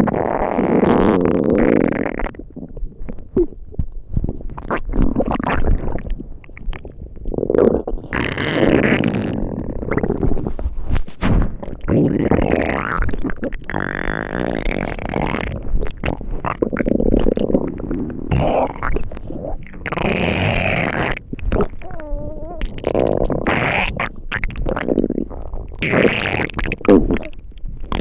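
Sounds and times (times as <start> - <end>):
synthesized stomach growls: 0.0 - 28.0.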